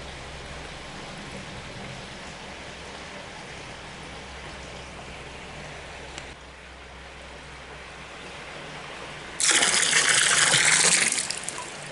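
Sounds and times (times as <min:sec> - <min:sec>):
ditch water flowing: 0:09.4 - 0:11.9
water gushing and splashing: 0:09.4 - 0:11.9.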